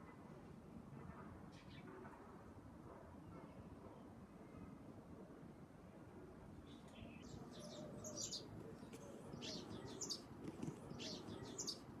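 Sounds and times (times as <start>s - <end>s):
songbirds twittering: 6.6s - 12.0s.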